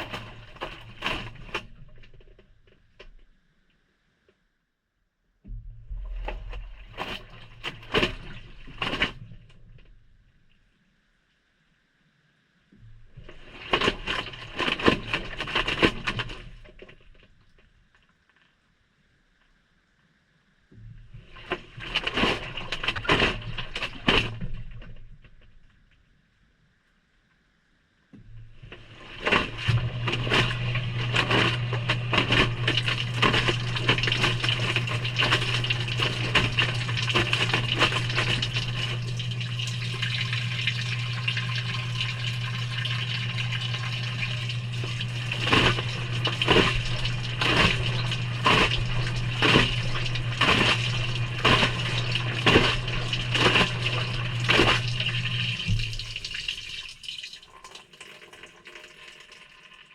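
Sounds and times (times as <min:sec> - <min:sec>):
washing machine filling with water: 0:00.0 - 0:02.4, 0:05.5 - 0:09.9, 0:13.0 - 0:17.2, 0:20.9 - 0:25.4, 0:28.3 - 0:59.9
washing machine hum: 0:00.0 - 0:03.4, 0:05.4 - 0:10.6, 0:12.8 - 0:17.6, 0:20.7 - 0:25.7, 0:28.2 - 0:59.9.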